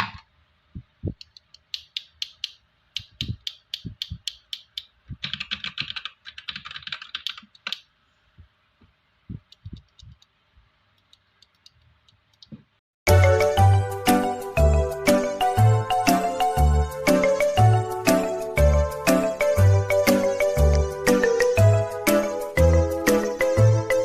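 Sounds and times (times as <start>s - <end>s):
mechanical keyboard typing: 1.2s - 7.9s.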